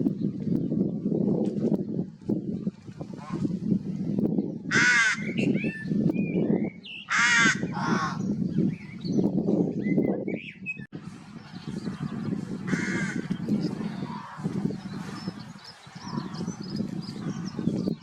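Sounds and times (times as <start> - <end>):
crows cawing: 4.7 - 5.2, 7.1 - 8.2, 12.7 - 13.3.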